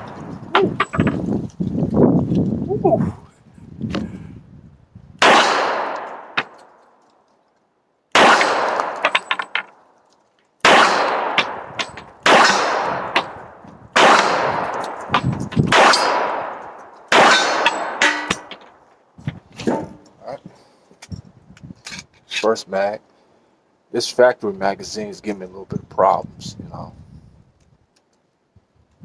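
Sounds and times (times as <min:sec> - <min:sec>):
pistol shots with echo: 0:05.2 - 0:06.6, 0:08.1 - 0:09.2, 0:10.6 - 0:18.6.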